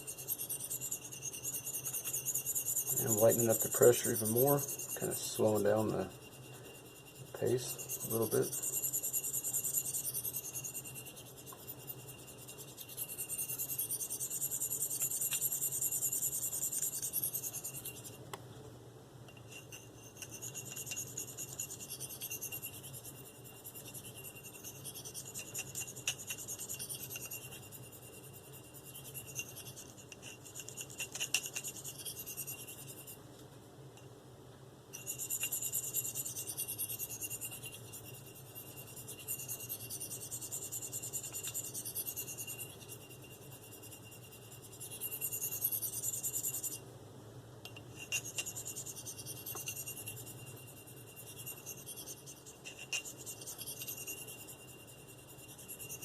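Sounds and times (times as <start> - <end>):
knife scraping on sharpening stone: 0.0 - 18.2, 19.3 - 33.2, 35.0 - 46.8, 47.7 - 56.0.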